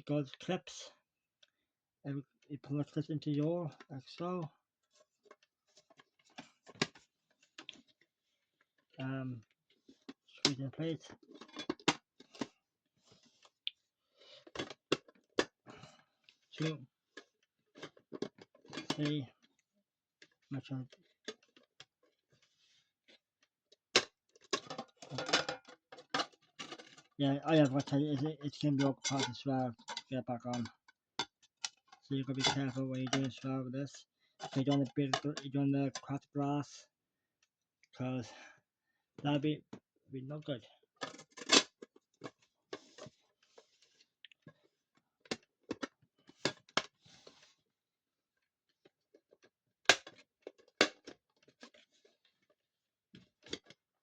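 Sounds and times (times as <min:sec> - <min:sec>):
clock glass clicks and clatter: 0:24.6 - 0:31.4, 0:32.2 - 0:33.4.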